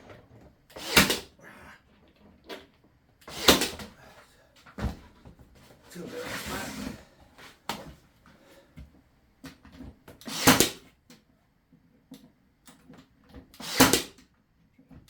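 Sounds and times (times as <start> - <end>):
brad nailer firing: 0.7 - 1.3, 3.3 - 3.9, 10.2 - 10.9, 13.6 - 14.2.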